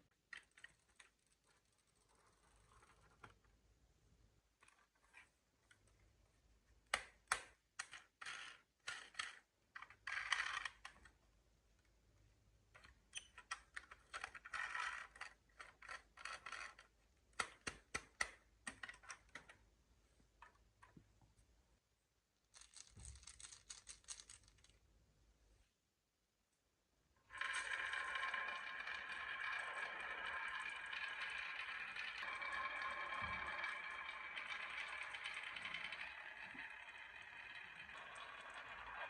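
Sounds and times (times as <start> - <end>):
marbles rattling rolls: 22.5 - 24.8, 27.3 - 39.0
marbles clacking on wooden blocks: 27.4 - 39.0.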